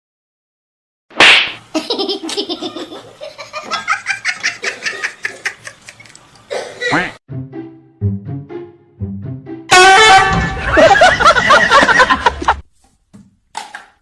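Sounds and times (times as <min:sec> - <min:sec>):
person laughing hard: 0:10.3 - 0:12.6.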